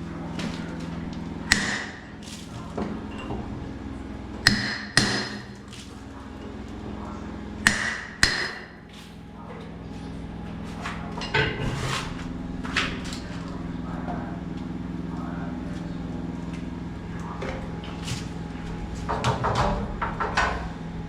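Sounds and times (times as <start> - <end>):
hammer strikes: 1.5 - 2.1, 4.4 - 5.6, 7.6 - 8.8.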